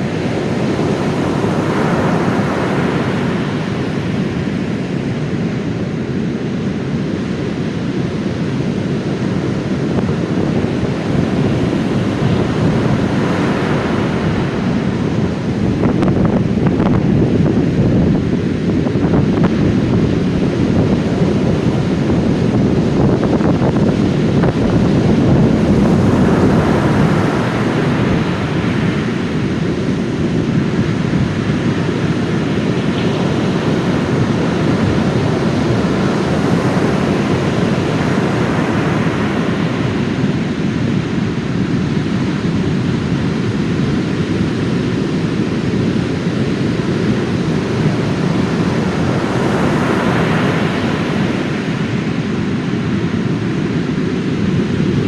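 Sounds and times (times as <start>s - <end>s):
wind buffeting microphone: 0.0s - 55.0s
surf breaking on beach: 10.0s - 23.1s, 23.7s - 41.8s, 46.8s - 53.2s.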